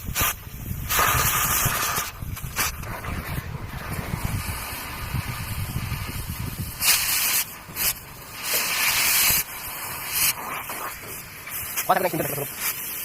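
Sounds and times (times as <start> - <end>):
loud hissing bursts: 0.0 - 13.0.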